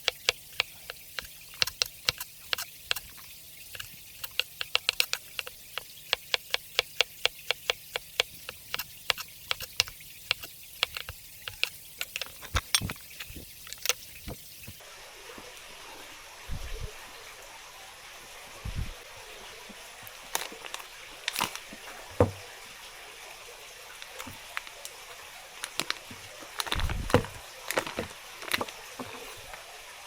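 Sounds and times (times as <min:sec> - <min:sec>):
hard objects clicking together: 0:00.0 - 0:14.8, 0:25.6 - 0:28.8
water running: 0:00.0 - 0:30.0
dull thump: 0:22.2 - 0:22.4.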